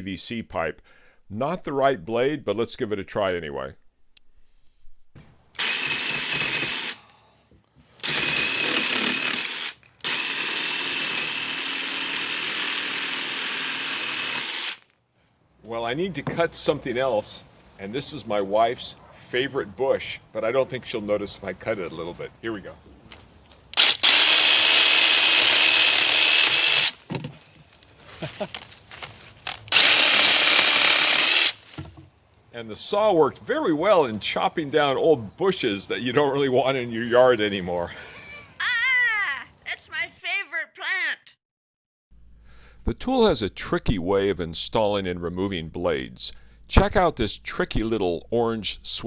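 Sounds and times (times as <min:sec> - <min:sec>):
cordless jigsaw cutting plastic pipe: 0:05.6 - 0:07.0, 0:08.0 - 0:14.9, 0:23.8 - 0:27.0, 0:29.5 - 0:31.6.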